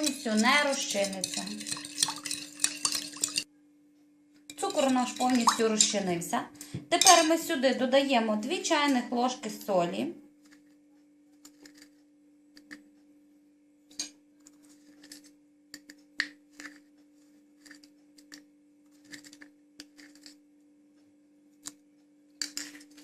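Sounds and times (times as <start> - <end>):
metal spoon scraping saucepan: 0.0 - 3.5, 4.5 - 6.1, 6.9 - 7.5.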